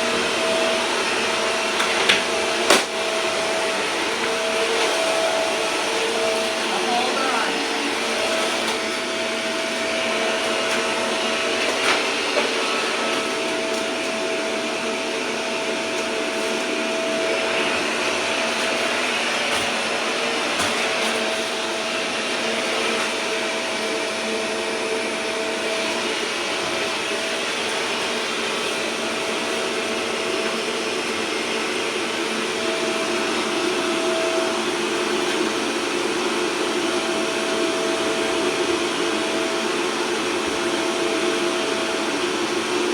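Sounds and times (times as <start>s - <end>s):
vacuum cleaner running: 0.0s - 42.9s.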